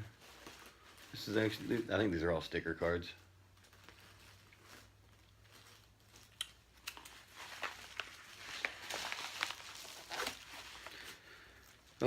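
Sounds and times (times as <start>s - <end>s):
packaging rustling and crinkling: 0.0s - 12.0s
sharp clicks and snaps: 6.3s - 7.2s.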